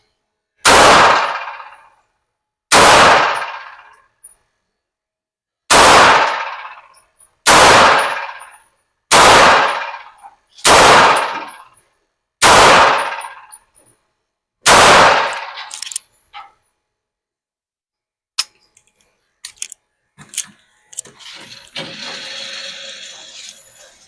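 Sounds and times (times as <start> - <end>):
gunshots ringing out: 0.6 - 1.9, 2.7 - 4.0, 5.7 - 11.7, 12.4 - 13.6, 14.6 - 15.8.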